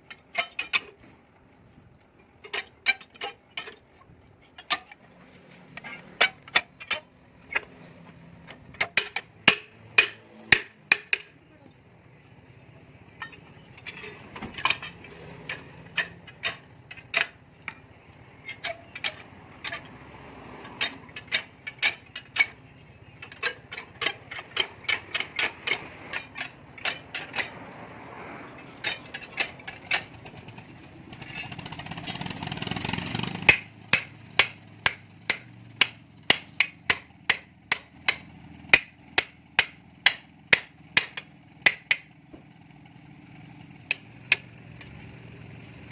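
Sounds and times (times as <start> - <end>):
hammer striking steel: 8.8 - 11.4, 33.4 - 42.1.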